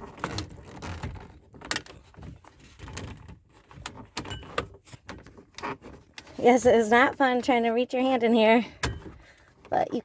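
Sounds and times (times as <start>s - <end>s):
plastic clicks and rattles: 0.0s - 6.3s.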